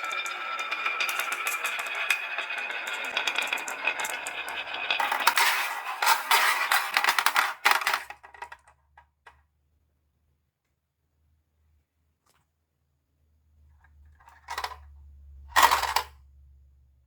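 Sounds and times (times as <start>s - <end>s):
marbles clattering down wooden run: 0.0s - 8.3s.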